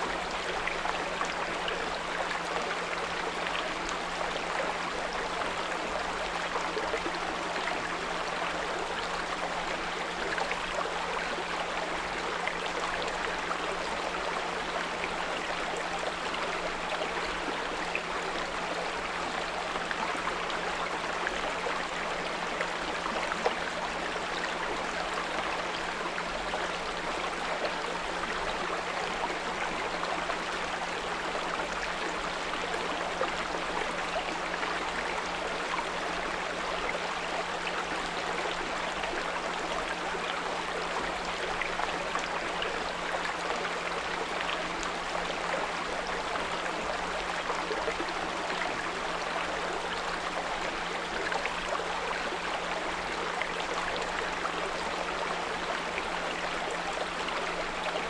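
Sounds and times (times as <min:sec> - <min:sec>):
brook flowing: 0:00.0 - 0:58.0.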